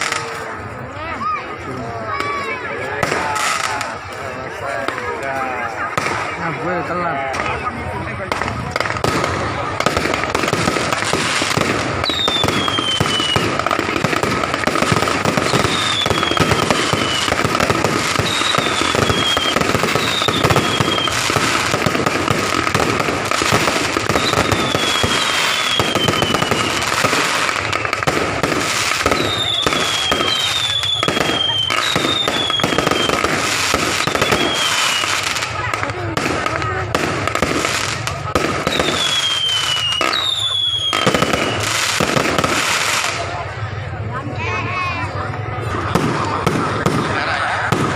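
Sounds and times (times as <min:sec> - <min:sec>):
fireworks crackling: 0:00.0 - 0:47.9
firework whistles falling in pitch: 0:12.0 - 0:13.4, 0:15.4 - 0:21.6, 0:24.0 - 0:28.2, 0:28.9 - 0:35.2, 0:38.6 - 0:41.9.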